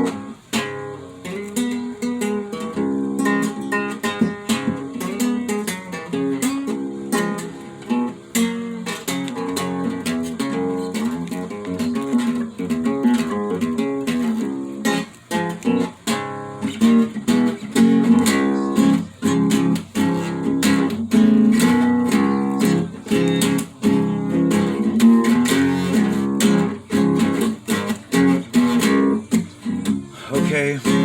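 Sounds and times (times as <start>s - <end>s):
acoustic guitar strumming chords: 0.0s - 31.0s.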